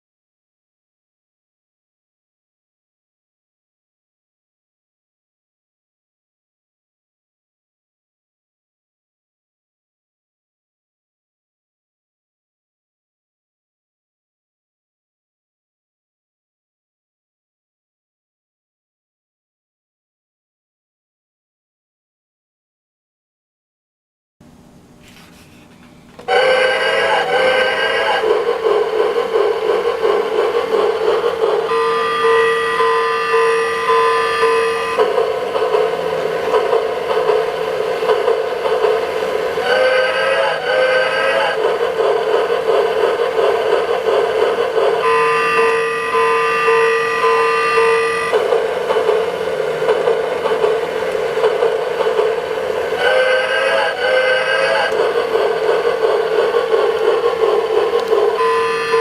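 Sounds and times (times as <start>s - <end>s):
train running clatter: 26.2s - 59.0s
train whistle: 26.2s - 59.0s
alarm clock alarm: 31.7s - 35.0s, 45.0s - 48.4s.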